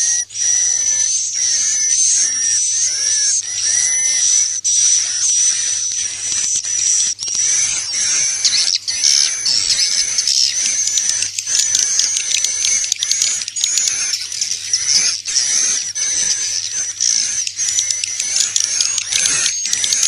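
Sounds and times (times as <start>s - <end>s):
chorus of twittering bird chirps: 0.0s - 20.0s.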